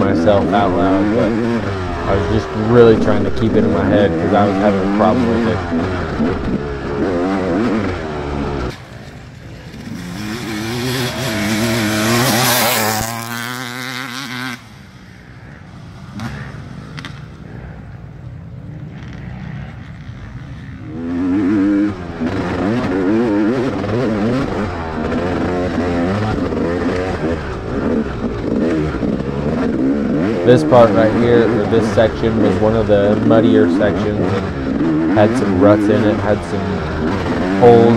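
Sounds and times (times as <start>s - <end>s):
dirt bike engine revving: 0.0s - 37.9s.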